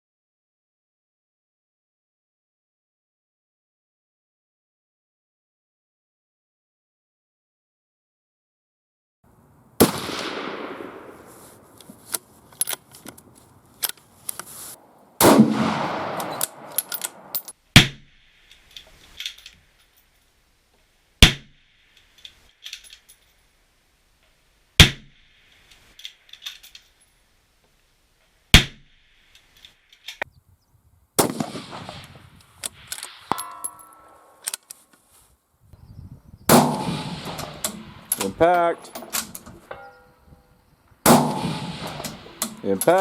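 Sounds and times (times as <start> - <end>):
rifle shots: 9.8 - 11.5, 15.2 - 18.0, 31.2 - 34.2, 36.5 - 39.4, 41.0 - 43.0
rolling echoes: 9.8 - 11.8, 14.8 - 17.4
rifle bolt clicks: 16.1 - 17.5.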